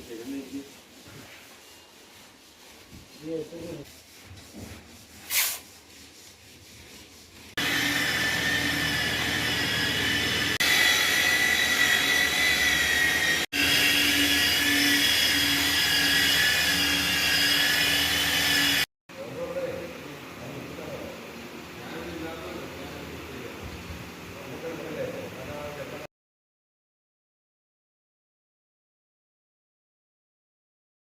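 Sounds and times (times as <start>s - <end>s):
power tool whining: 7.6s - 18.9s.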